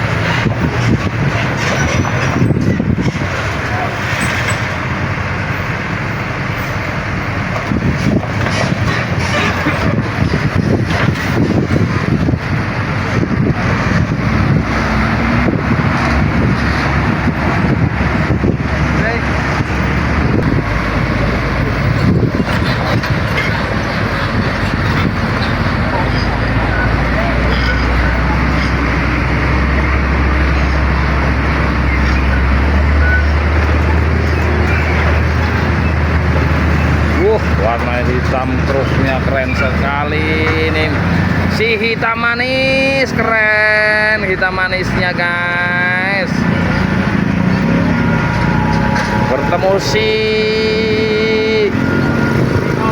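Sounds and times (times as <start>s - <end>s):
wind buffeting microphone: 0.0s - 3.8s, 7.1s - 43.2s
road vehicles passing: 0.0s - 52.9s.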